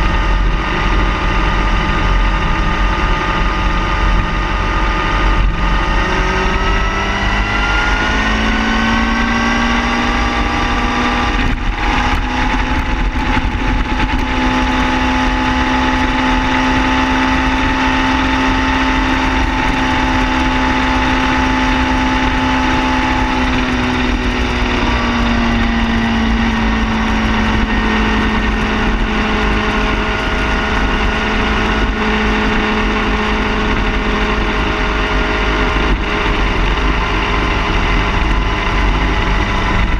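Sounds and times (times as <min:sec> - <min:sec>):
car engine running: 0:00.0 - 0:39.9
low rumble: 0:00.0 - 0:39.9.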